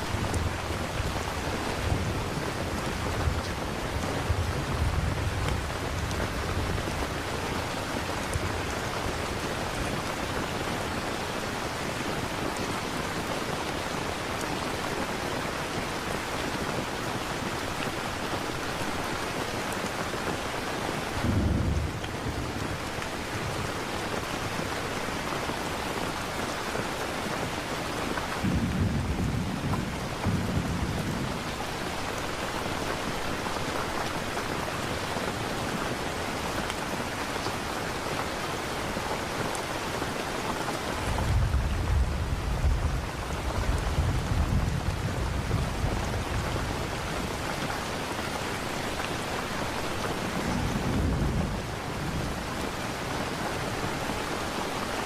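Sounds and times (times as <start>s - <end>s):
low thunder rumbling: 0.0s - 7.2s, 21.2s - 23.7s, 28.4s - 31.7s, 41.0s - 47.4s, 50.2s - 52.5s
heavy rain: 0.0s - 55.0s.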